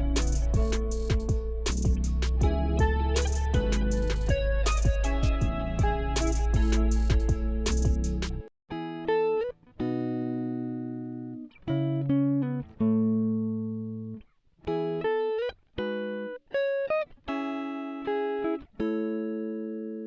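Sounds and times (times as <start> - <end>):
plucked guitar music: 0.0 - 20.0.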